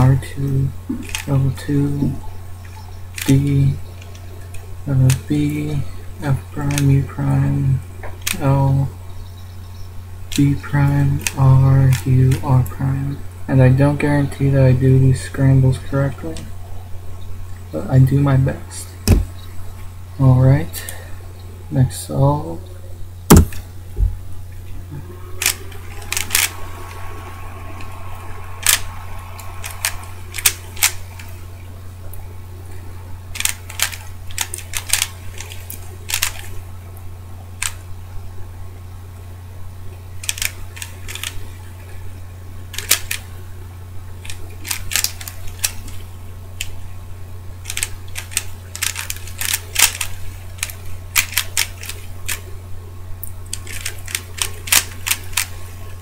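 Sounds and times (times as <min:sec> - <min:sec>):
low hum: 0:00.0 - 0:56.0
puzzle cube plastic clicks: 0:25.4 - 0:26.6, 0:28.6 - 0:31.3, 0:33.4 - 0:36.6, 0:37.6 - 0:37.8, 0:40.2 - 0:41.4, 0:42.8 - 0:43.3, 0:44.2 - 0:46.0, 0:47.6 - 0:52.5, 0:53.5 - 0:55.7.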